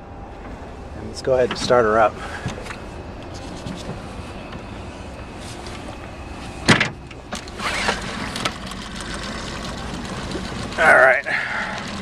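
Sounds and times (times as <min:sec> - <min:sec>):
outboard motor starting: 0:06.6 - 0:12.0.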